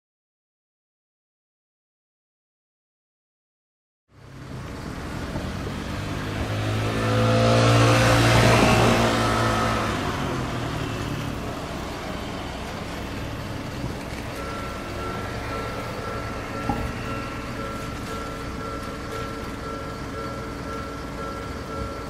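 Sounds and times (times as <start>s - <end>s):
vehicle passing by: 4.2s - 18.2s.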